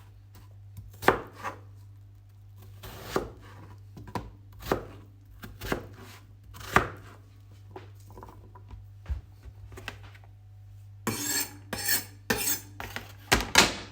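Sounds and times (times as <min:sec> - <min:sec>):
knife chopping on cutting board: 0:00.8 - 0:01.6, 0:02.7 - 0:07.2, 0:11.1 - 0:13.0.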